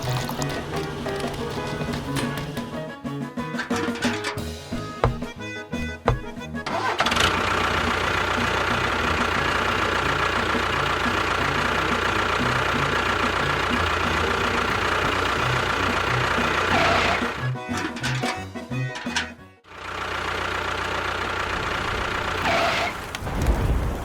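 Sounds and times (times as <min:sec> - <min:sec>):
small motor whining: 0:12.9 - 0:17.6.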